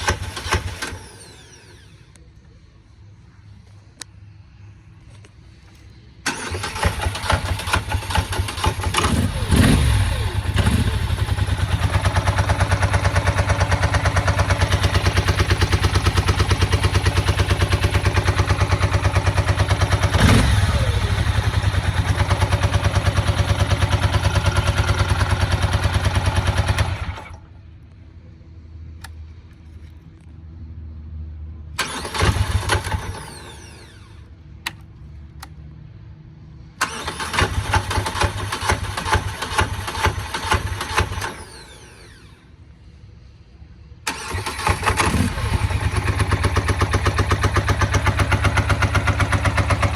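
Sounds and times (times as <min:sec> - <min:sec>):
engine running roughly: 0:06.3 - 0:27.5, 0:44.1 - 0:49.9.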